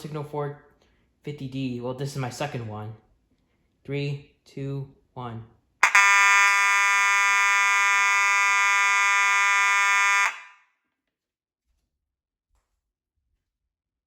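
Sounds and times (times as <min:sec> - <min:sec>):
fire alarm horn steady tone: 0:05.8 - 0:10.6.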